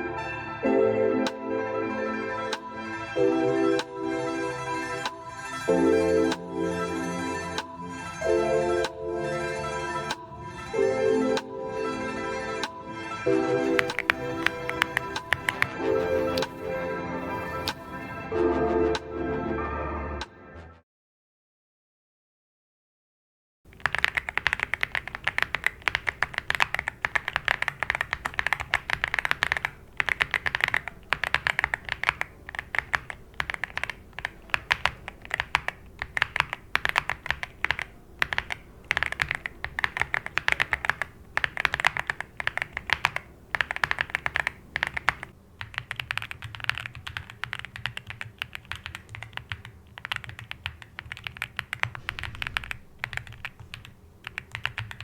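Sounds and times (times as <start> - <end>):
mechanical keyboard typing: 13.6 - 18.2, 23.7 - 55.0.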